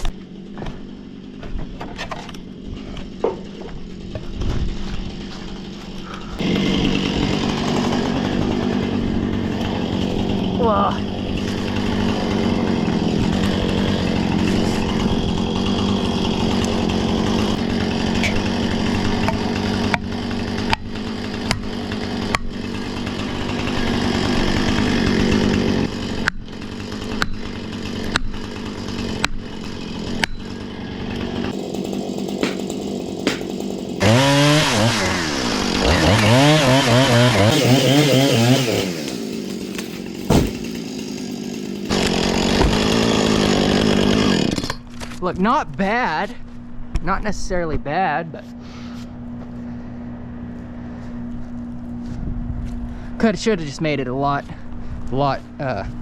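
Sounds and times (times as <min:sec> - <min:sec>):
chainsaw cutting: 0:00.0 - 0:56.0
sharp knocks: 0:32.4 - 0:33.6, 0:40.2 - 0:40.8.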